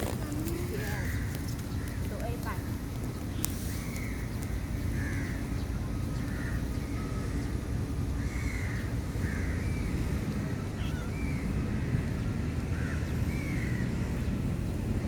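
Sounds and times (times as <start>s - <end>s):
crow cawing: 8.2s - 9.8s, 12.7s - 13.8s.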